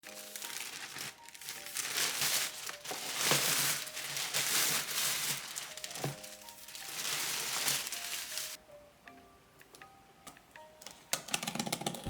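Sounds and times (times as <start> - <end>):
packaging crinkling: 0.0 - 8.6.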